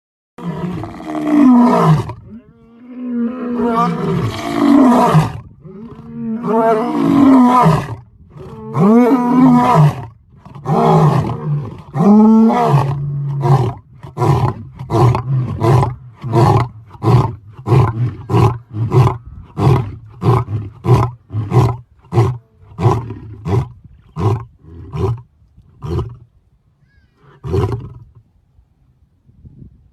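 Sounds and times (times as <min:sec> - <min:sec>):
lion roaring: 0:00.4 - 0:25.2.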